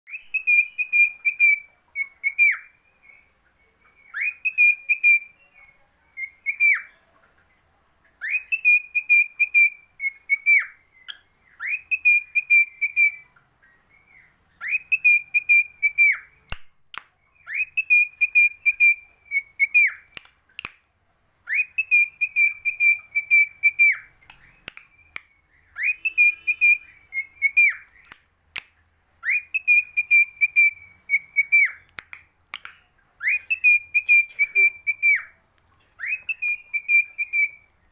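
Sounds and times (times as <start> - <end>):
cockatiel whistling a tune: 0.1 - 2.7, 4.1 - 5.4, 6.2 - 6.9, 8.2 - 13.2, 14.6 - 16.3, 17.4 - 20.0, 21.5 - 24.1, 25.0 - 27.9, 29.2 - 31.8, 33.2 - 35.3, 36.0 - 37.7.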